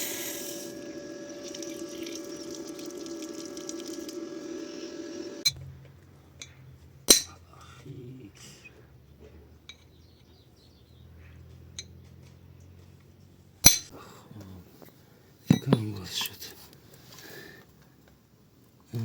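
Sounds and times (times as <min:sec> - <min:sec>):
vacuum cleaner motor hum: 0:00.0 - 0:05.4.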